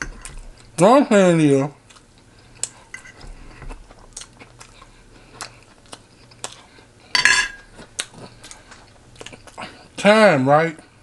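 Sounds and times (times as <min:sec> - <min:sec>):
chewing crunches: 0:01.7 - 0:10.0.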